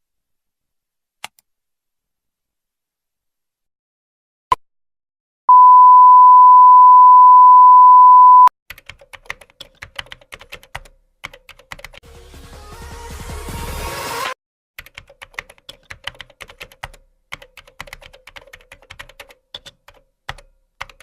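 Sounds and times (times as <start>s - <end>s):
steady electronic beep: 5.5s - 8.5s
computer keyboard typing: 8.7s - 12.0s, 14.8s - 21.0s.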